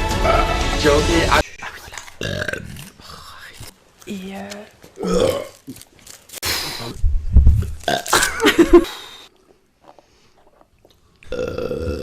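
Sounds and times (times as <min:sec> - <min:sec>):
man belching: 0:05.0 - 0:05.6, 0:11.3 - 0:12.0.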